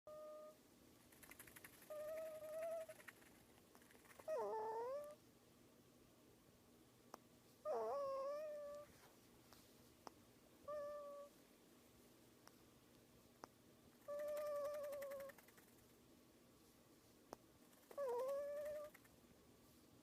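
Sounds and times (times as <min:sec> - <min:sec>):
prairie dog squeaky whining: 0:00.1 - 0:00.6, 0:01.8 - 0:03.0, 0:04.1 - 0:05.2, 0:07.6 - 0:08.9, 0:10.7 - 0:11.3, 0:14.0 - 0:15.4, 0:17.8 - 0:19.0.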